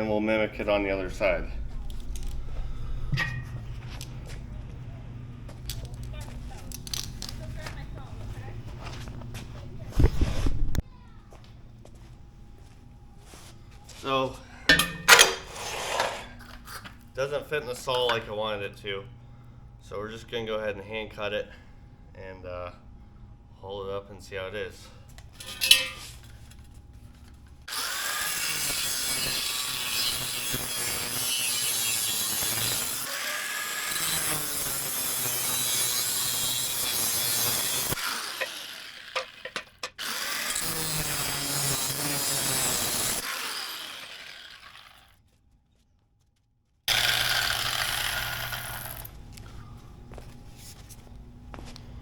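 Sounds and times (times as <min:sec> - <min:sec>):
sawing metal by hand: 0:14.7 - 0:16.4, 0:25.4 - 0:26.1, 0:27.7 - 0:45.1, 0:46.9 - 0:49.1.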